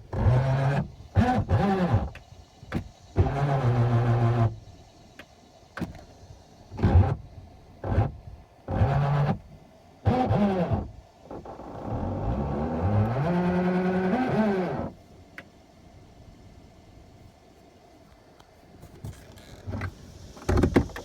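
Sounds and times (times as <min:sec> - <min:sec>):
car door motor grinding and whining: 0:00.0 - 0:04.6, 0:07.8 - 0:09.5, 0:10.1 - 0:15.0.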